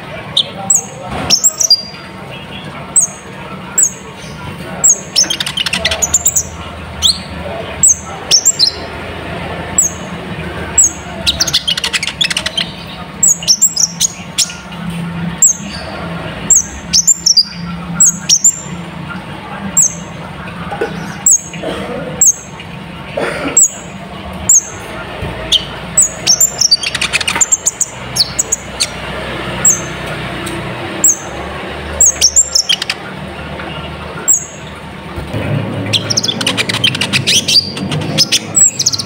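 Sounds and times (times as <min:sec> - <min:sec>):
bird chattering trills: 0:00.2 - 0:09.0, 0:09.6 - 0:14.7, 0:15.4 - 0:18.8, 0:20.9 - 0:21.6, 0:25.4 - 0:30.1, 0:32.0 - 0:33.1, 0:35.9 - 0:39.0
bird high chirps: 0:00.3 - 0:02.0, 0:02.9 - 0:08.9, 0:09.7 - 0:10.1, 0:10.7 - 0:14.7, 0:16.5 - 0:18.8, 0:25.5 - 0:29.0, 0:32.0 - 0:33.0, 0:34.3 - 0:34.7, 0:35.9 - 0:39.0.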